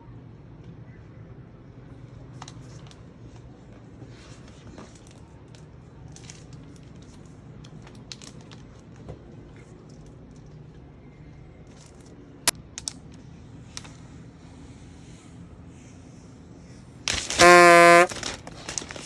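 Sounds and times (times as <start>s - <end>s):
packaging rustling: 17.1s - 19.0s.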